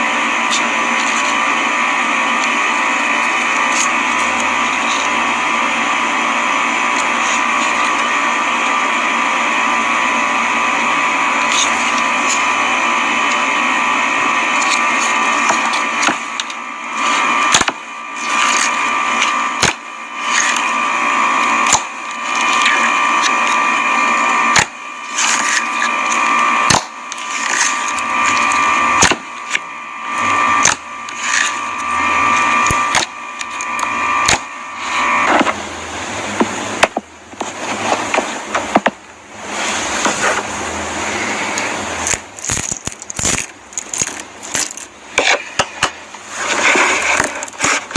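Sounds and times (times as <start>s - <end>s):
steady hum: 0.0s - 47.9s
slime squeezed crackling and popping: 42.1s - 44.9s.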